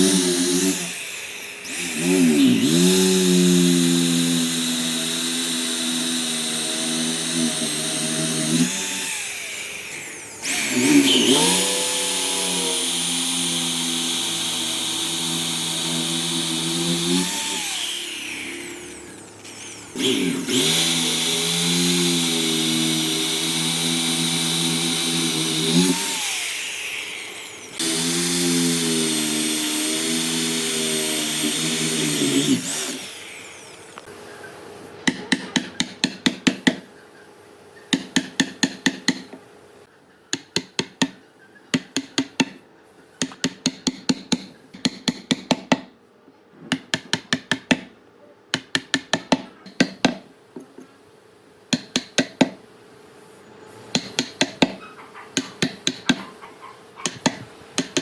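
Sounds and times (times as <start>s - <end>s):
power tool motor running: 0.0s - 34.1s.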